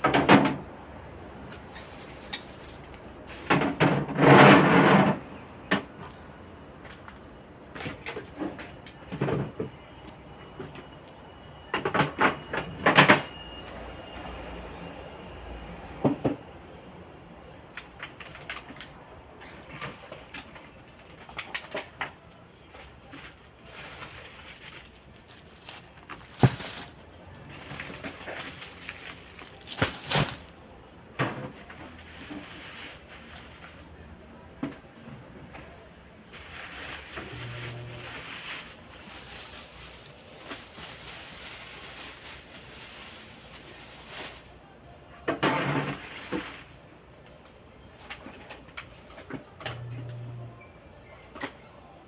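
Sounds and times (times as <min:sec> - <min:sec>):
containers clattering: 0:23.7 - 0:30.5, 0:36.4 - 0:42.9.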